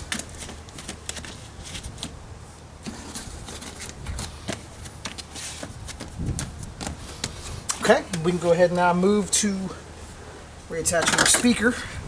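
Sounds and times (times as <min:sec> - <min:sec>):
rustling of wiring: 0:00.0 - 0:09.3
low steady hum: 0:00.0 - 0:12.0.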